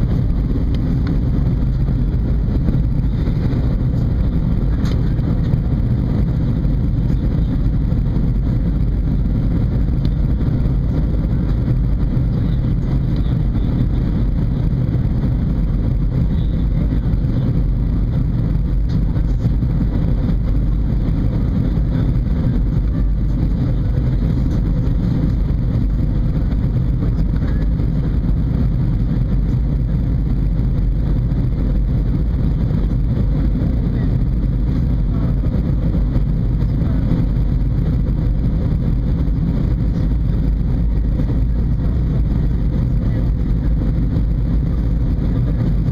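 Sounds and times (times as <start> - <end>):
aircraft cabin engine rumble: 0.0 - 45.9
faint steady hum: 0.0 - 45.9.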